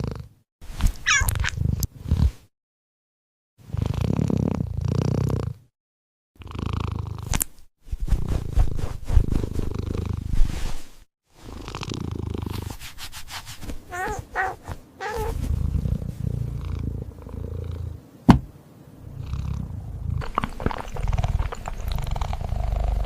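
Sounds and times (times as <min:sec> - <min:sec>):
cat mewing: 0:01.0 - 0:01.6, 0:13.9 - 0:15.4
cat purring: 0:13.4 - 0:18.1, 0:19.0 - 0:23.0.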